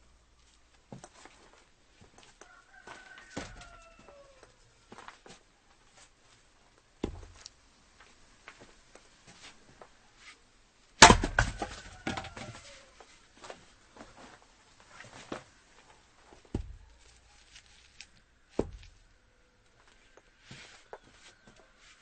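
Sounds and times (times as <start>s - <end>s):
axe striking firewood: 7.0s - 7.5s, 11.0s - 12.4s, 16.5s - 17.2s, 18.5s - 19.0s
split wood clattering: 11.0s - 12.5s
wood knocks: 16.5s - 16.9s.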